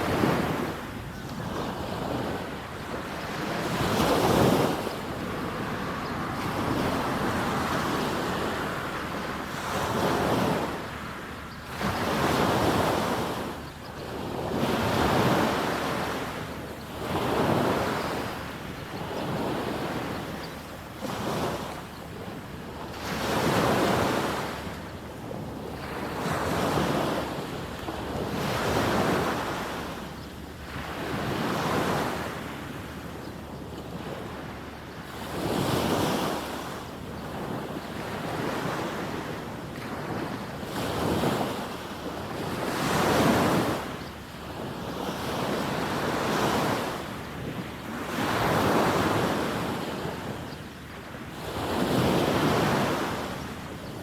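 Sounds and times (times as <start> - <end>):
small waves breaking on sand: 0.0 - 33.3, 33.9 - 54.0.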